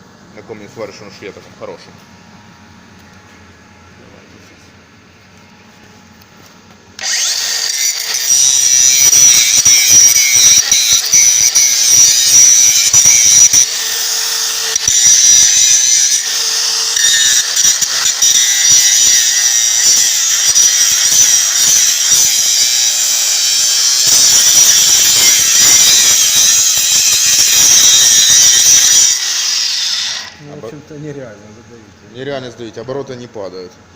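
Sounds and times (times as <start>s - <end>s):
angle grinder grinding metal: 7.0s - 30.5s.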